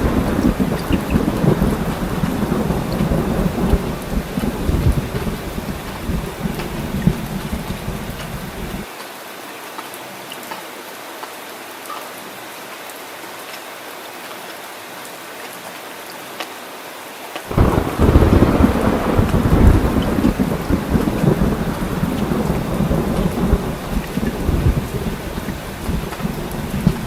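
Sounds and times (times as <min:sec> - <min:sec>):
thunder rumbling: 0:00.0 - 0:08.8, 0:17.5 - 0:27.0
heavy rain: 0:00.0 - 0:27.0.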